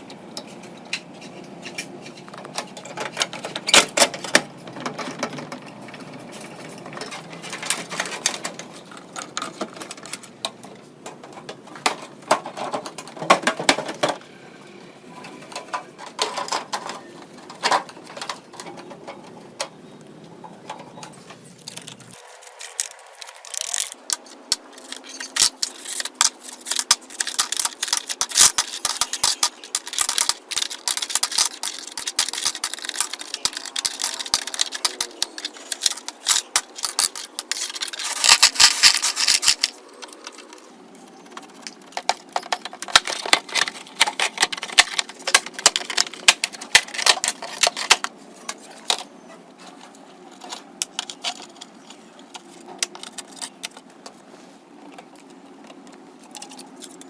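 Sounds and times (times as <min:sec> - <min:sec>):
small hand tools clicking and scraping: 0:15.1 - 0:57.0.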